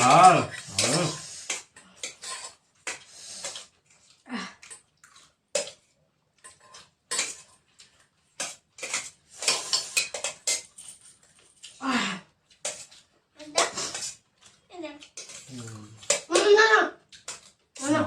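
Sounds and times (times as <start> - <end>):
dishes and cutlery clinking: 0.0 - 3.7, 6.4 - 11.8, 13.6 - 16.5.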